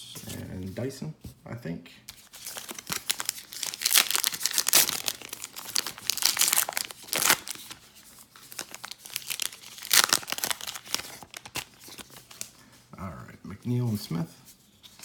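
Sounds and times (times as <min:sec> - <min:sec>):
card pack wrapper crinkling and tearing: 0:02.2 - 0:12.5.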